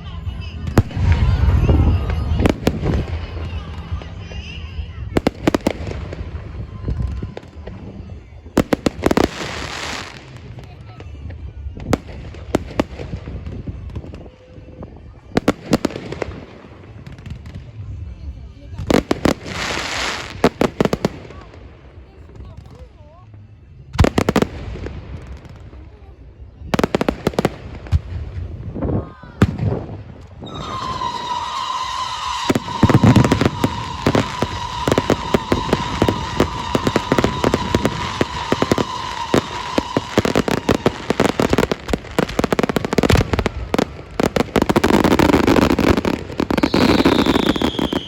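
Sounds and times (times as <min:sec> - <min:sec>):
fireworks bangs and crackling: 0:00.0 - 0:48.0
falling whistle: 0:30.4 - 0:40.9, 0:46.6 - 0:48.0
high firework whistle: 0:30.4 - 0:48.0.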